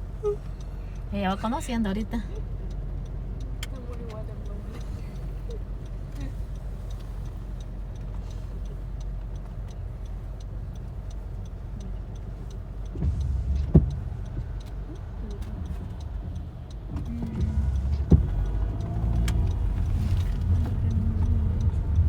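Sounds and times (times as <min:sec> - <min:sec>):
faint regular ticking: 0:00.0 - 0:22.0
road and engine rumble: 0:00.0 - 0:22.0
sharp knock: 0:13.0 - 0:14.6.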